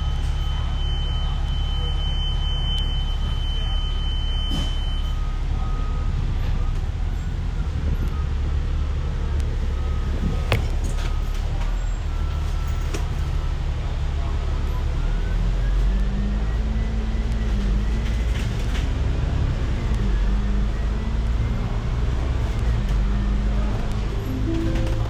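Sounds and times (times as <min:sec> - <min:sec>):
bus engine and road rumble: 0:00.0 - 0:25.0
thin high tone: 0:24.2 - 0:25.0.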